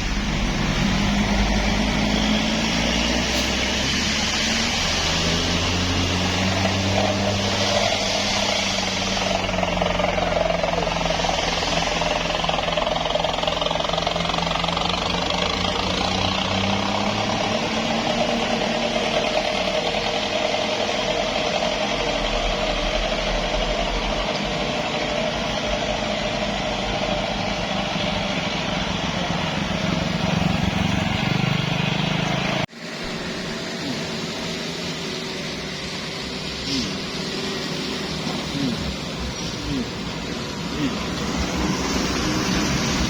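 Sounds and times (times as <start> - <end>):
heavy vehicle engine running: 0.0 - 43.0.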